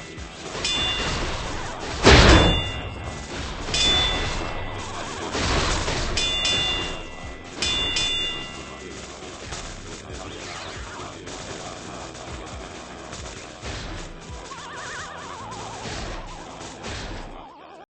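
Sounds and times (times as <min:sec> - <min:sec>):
metallic clangs ringing: 0:00.1 - 0:10.0
knocks: 0:00.6 - 0:08.7
heavy thud: 0:00.7 - 0:08.6.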